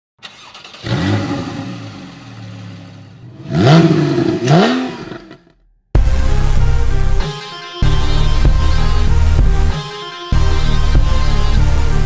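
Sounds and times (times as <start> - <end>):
car engine starting and revving: 0.2 - 5.6.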